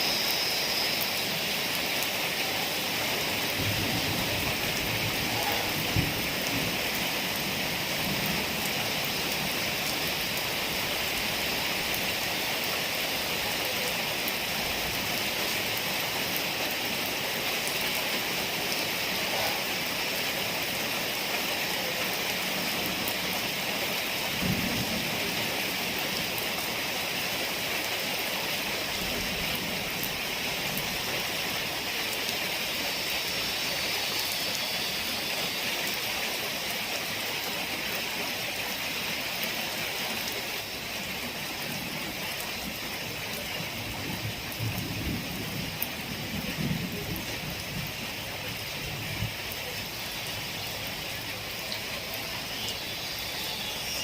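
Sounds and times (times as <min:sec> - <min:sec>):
heavy rain hissing: 0:00.0 - 0:54.0.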